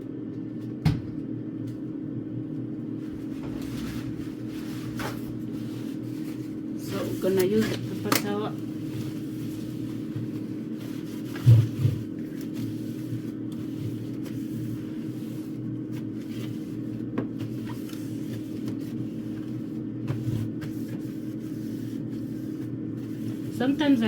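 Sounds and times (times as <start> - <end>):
steady low hum: 0.0 - 24.0
knocks and clicks in a fridge: 0.6 - 1.8, 11.4 - 12.2.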